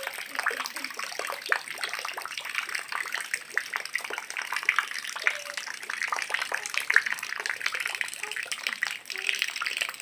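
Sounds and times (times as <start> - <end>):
close drips and splashes: 0.0 - 10.0
rain falling: 0.0 - 10.0.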